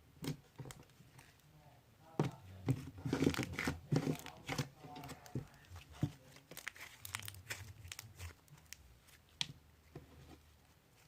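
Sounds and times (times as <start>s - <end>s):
bead slime crackling: 5.1s - 9.4s.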